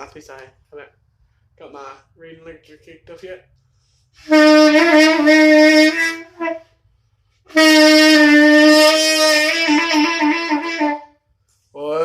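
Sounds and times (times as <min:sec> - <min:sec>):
alto saxophone long notes: 0:04.2 - 0:06.8, 0:07.4 - 0:11.2.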